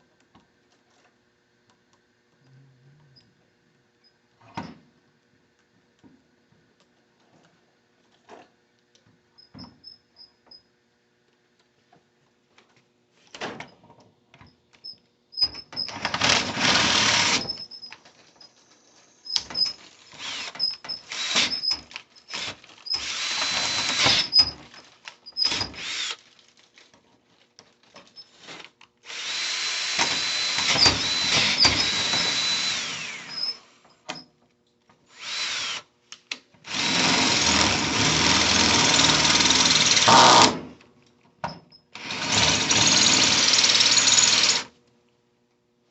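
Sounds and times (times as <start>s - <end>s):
electric drill boring into steel: 15.9s - 17.6s, 20.1s - 24.5s, 25.4s - 26.2s, 28.3s - 33.8s, 35.1s - 35.9s, 36.7s - 40.6s, 42.0s - 44.7s.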